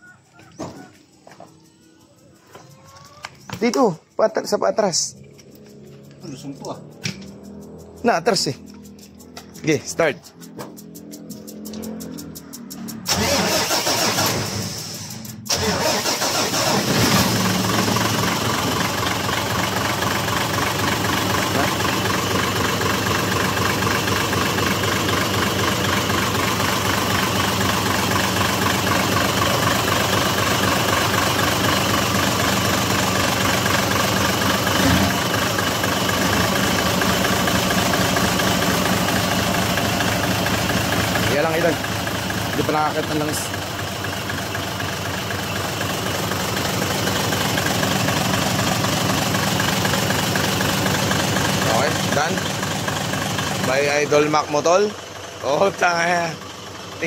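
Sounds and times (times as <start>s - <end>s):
diesel engine cranking and idling: 2.2s - 57.0s.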